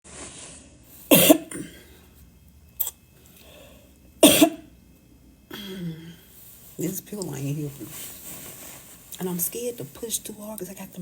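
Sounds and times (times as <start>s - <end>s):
woman coughing: 1.1s - 1.8s, 4.2s - 4.7s.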